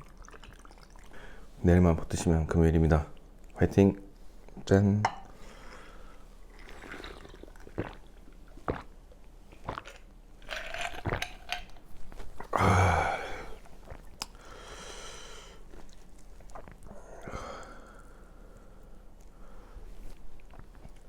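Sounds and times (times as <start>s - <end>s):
wet chewing with lip smacks: 7.2s - 12.6s, 15.6s - 16.9s, 20.1s - 21.0s
person grunting: 12.5s - 13.6s.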